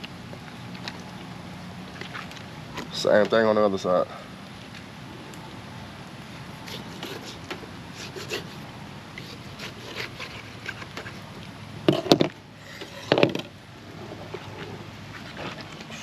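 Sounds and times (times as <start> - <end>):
knife scraping fish skin: 6.6 - 8.6, 9.2 - 11.2.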